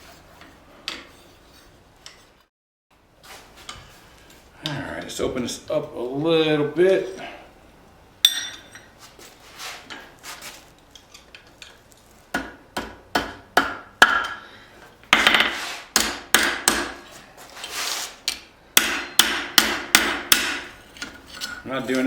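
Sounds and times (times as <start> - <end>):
hammer striking steel on anvil: 8.2 - 8.9, 12.4 - 14.4, 18.8 - 20.8.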